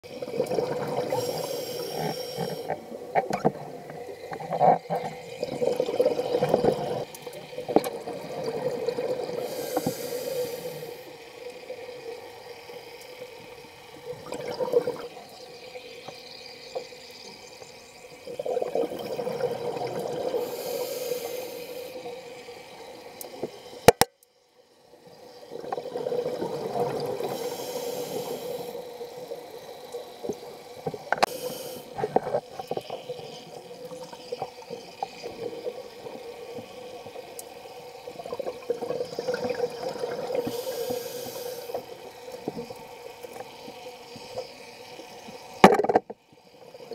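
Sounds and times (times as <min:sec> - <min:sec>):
exhaled bubbles burbling: 0:00.0 - 0:01.4, 0:04.4 - 0:09.6, 0:14.0 - 0:15.4, 0:18.2 - 0:20.5, 0:25.5 - 0:27.4, 0:38.1 - 0:40.5
scuba regulator breathing underwater: 0:00.3 - 0:02.9, 0:09.3 - 0:11.2, 0:20.0 - 0:22.1, 0:27.2 - 0:28.8, 0:31.2 - 0:32.2, 0:40.1 - 0:41.9.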